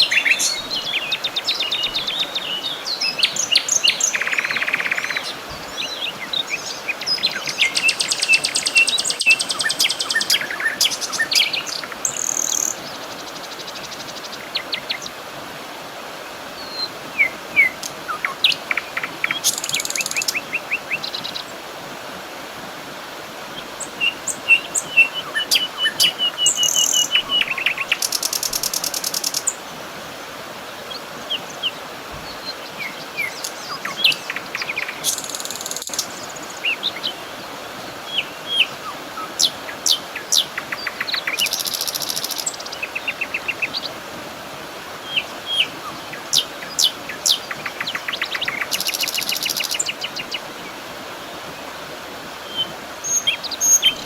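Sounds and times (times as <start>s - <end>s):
background hiss: 0.0s - 54.0s
bird chirps: 24.0s - 29.6s.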